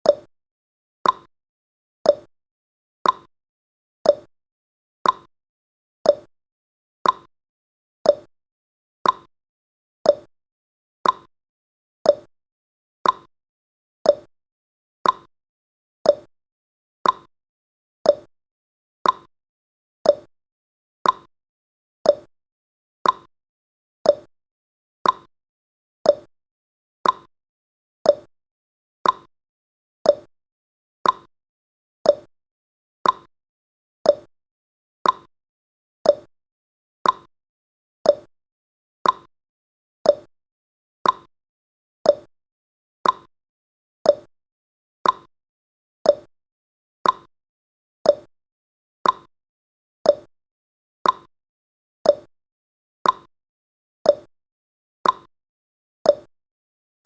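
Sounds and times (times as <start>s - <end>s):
clock ticking: 39.0s - 39.3s, 43.0s - 43.3s.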